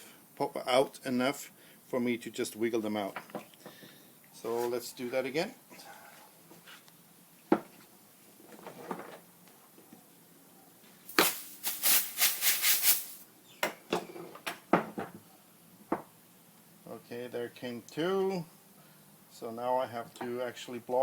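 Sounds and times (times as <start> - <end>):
compressed air blow gun hissing: 11.1 - 13.2.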